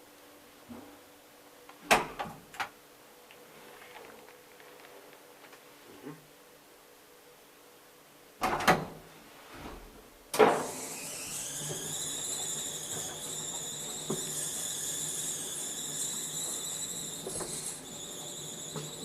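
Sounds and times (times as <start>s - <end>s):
elevator whine: 10.6s - 19.0s.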